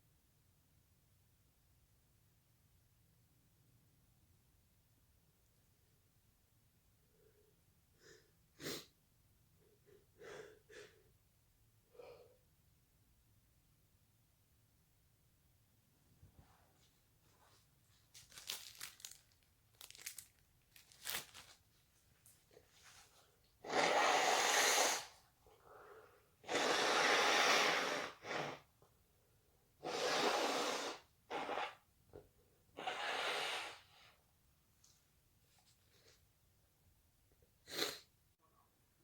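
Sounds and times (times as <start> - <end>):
person blowing nose into tissue: 8.1 - 8.9, 23.6 - 25.2, 26.4 - 28.7, 29.8 - 31.8, 32.8 - 34.1, 37.6 - 38.1
tissue crinkling: 17.9 - 22.4.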